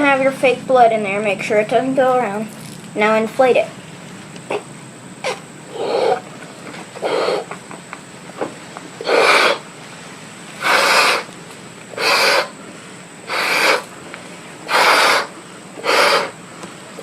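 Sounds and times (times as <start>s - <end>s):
person blowing up a balloon: 9.0s - 9.6s, 10.6s - 11.3s, 12.0s - 12.5s, 13.3s - 13.9s, 14.7s - 16.4s.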